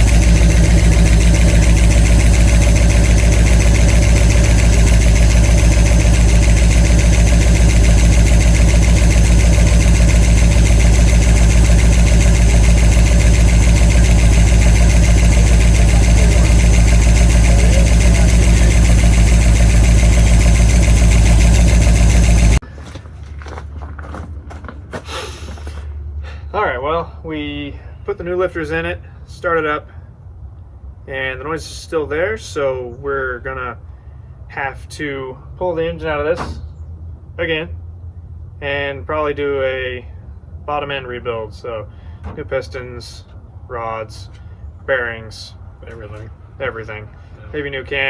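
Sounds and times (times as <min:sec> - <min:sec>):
engine idling with ticking: 0:00.0 - 0:23.6.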